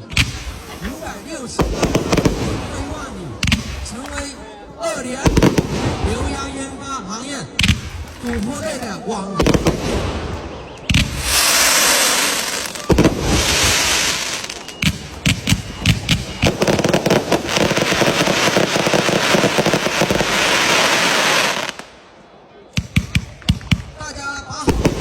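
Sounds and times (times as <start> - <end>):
crackling firework hiss: 0.0 - 4.2, 9.4 - 22.0
crackling firework pops: 0.0 - 4.3, 9.4 - 21.9
firework bangs: 0.0 - 6.7, 7.6 - 22.0, 24.6 - 25.0.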